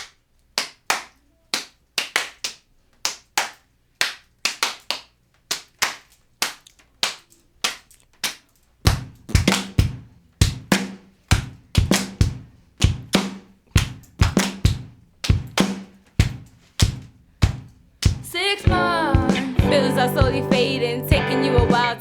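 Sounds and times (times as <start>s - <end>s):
rhythmic hand claps: 0.0s - 22.0s
kick drum: 8.9s - 21.9s
low bass line: 18.7s - 22.0s.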